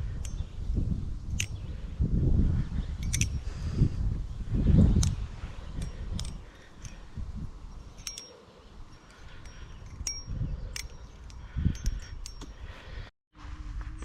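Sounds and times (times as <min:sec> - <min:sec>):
butterfly knife clicking: 0:01.3 - 0:01.6, 0:03.0 - 0:03.4, 0:05.8 - 0:07.0, 0:07.9 - 0:08.4, 0:09.1 - 0:12.6.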